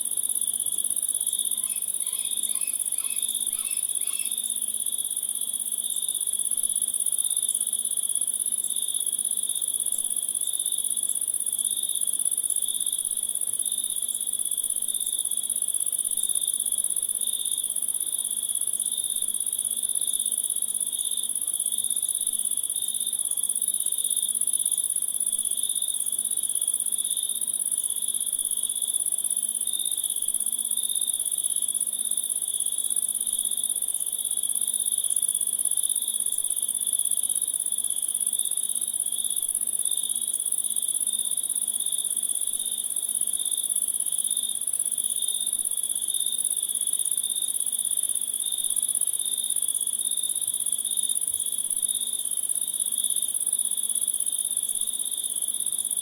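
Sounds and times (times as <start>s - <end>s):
crickets and insects chorus: 0.0s - 56.0s
pulsing insect trill: 1.3s - 4.6s.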